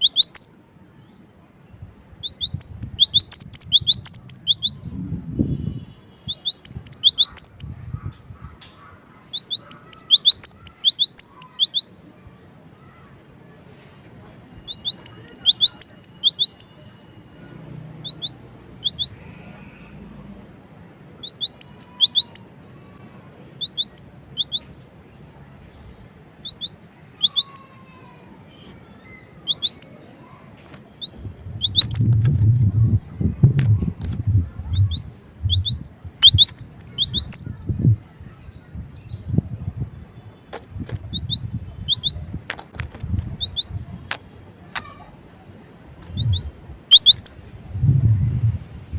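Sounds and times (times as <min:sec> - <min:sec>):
bird singing high notes: 0:21.2 - 0:22.6, 0:31.0 - 0:32.2, 0:34.8 - 0:37.6, 0:41.1 - 0:42.2, 0:46.0 - 0:47.4
thumps and clicks: 0:33.4 - 0:34.4, 0:42.4 - 0:43.4.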